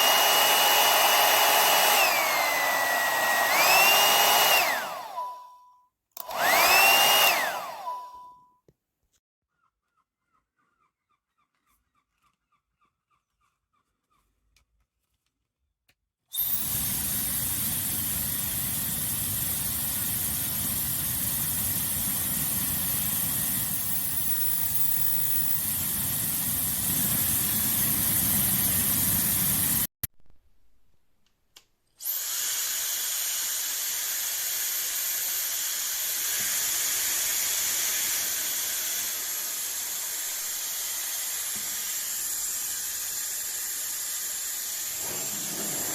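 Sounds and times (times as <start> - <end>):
hair dryer blowing with whine: 0.0 - 5.4, 6.2 - 8.1, 16.4 - 24.3, 25.4 - 29.9, 34.8 - 45.9.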